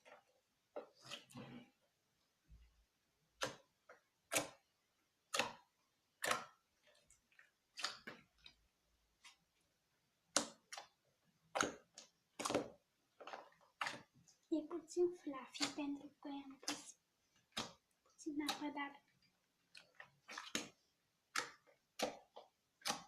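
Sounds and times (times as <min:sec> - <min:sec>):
slime clicking and popping: 0:03.4 - 0:08.6, 0:10.3 - 0:14.1, 0:16.6 - 0:18.8, 0:19.6 - 0:23.0.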